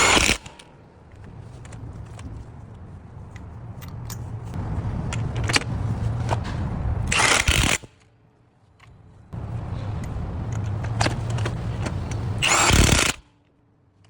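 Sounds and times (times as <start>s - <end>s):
impact wrench burst: 0.0s - 0.6s, 7.1s - 7.9s, 12.4s - 13.2s
impact wrench rumble: 9.4s - 13.2s.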